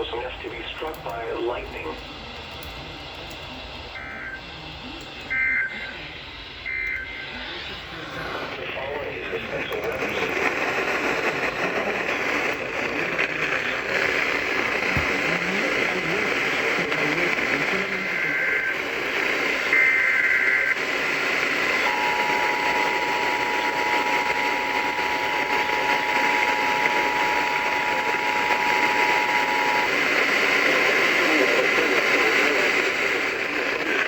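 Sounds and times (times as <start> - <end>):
two-tone emergency signal: 5.1 - 7.5, 19.6 - 31.0
static hiss: 5.8 - 34.0.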